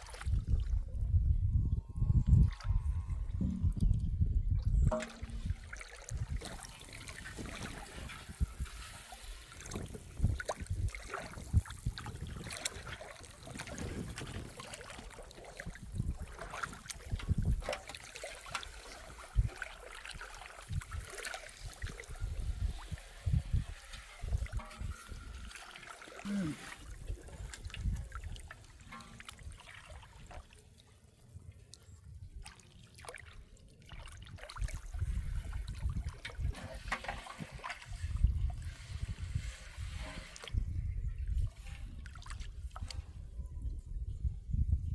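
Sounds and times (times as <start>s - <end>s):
water trickling and splashing: 0.0s - 1.2s, 2.0s - 44.7s
knocks and low thumps: 3.3s - 5.7s.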